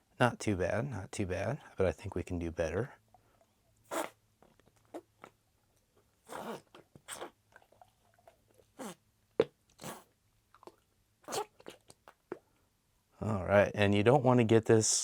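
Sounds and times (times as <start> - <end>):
putty fart-like noises: 3.9 - 5.4, 6.2 - 7.4, 8.8 - 12.4.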